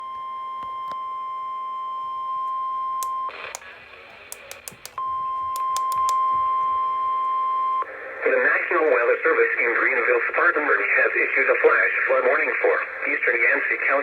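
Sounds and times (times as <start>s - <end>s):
sharp clicks: 3.0s - 5.0s, 5.6s - 6.2s.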